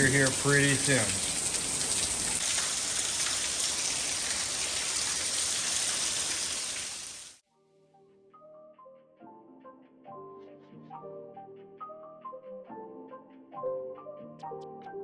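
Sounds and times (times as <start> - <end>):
heavy rain pouring: 0.0 - 7.4.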